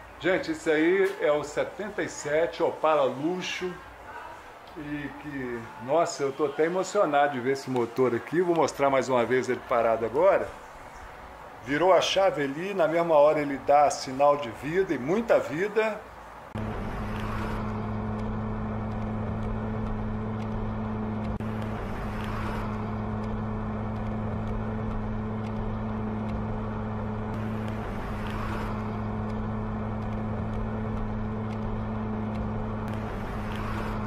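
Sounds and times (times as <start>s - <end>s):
car engine idling: 16.5s - 34.0s.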